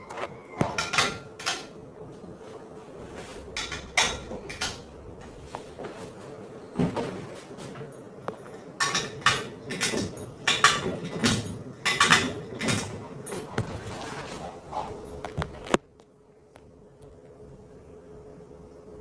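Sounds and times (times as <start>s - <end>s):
faint steady hum: 0.0s - 19.0s
hard objects clattering and knocking: 0.2s - 1.8s, 3.4s - 6.0s, 6.8s - 15.8s.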